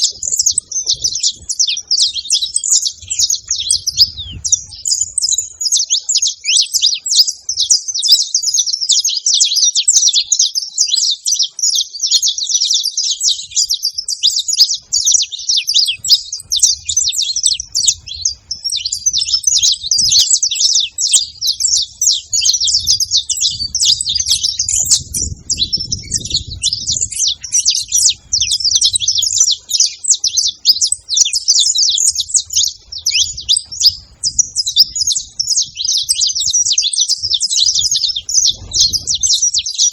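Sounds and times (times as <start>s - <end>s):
flock of finches chirping: 0.0s - 39.9s.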